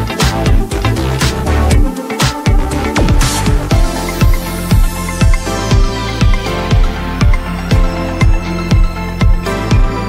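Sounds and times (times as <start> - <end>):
electronic music: 0.0 - 10.0
kick drum beat: 0.0 - 10.0
falling synth sweep: 2.6 - 4.6.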